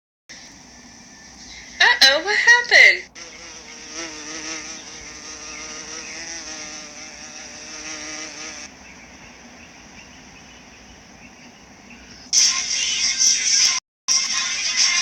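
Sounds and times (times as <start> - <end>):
insect buzzing: 3.0 - 10.7.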